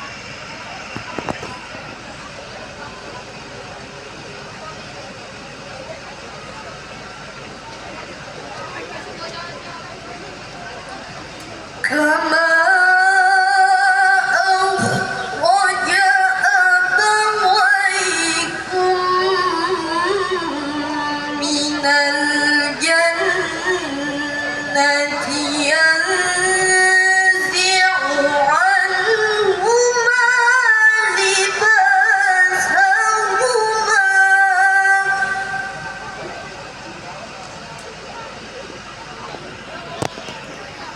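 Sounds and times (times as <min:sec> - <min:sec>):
woman reciting melodically: 0:11.8 - 0:36.2.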